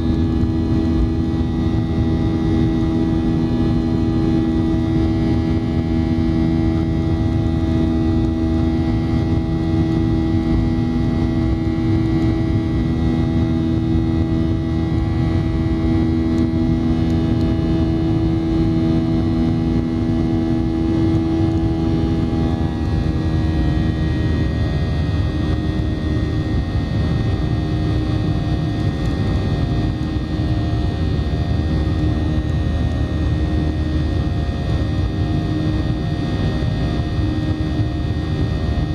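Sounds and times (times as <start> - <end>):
jet engines heard from cabin: 0.0 - 38.9.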